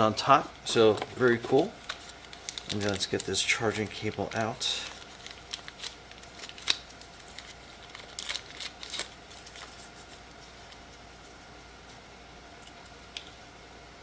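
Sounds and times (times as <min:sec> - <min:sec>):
packaging rustling: 0:00.0 - 0:11.5
packaging clicks: 0:00.9 - 0:09.7.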